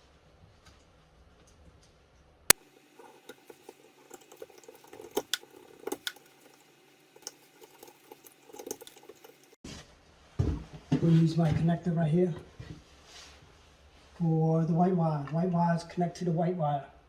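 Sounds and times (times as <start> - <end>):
wiring and tools clicking: 1.4 - 9.6.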